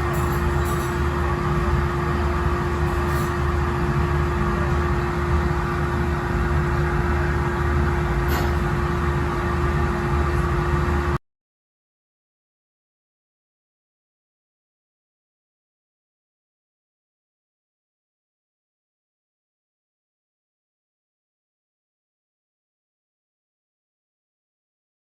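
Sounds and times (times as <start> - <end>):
mechanical hum: 0.0 - 11.2.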